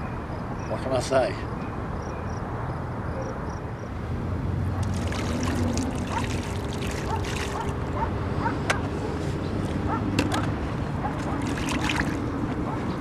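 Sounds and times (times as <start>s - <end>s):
water splashing and lapping: 4.8s - 13.0s.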